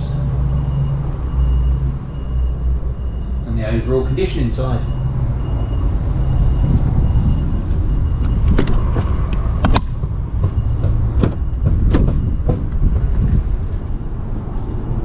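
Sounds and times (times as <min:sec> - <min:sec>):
sharp knocks and clicks: 0:08.2 - 0:13.4.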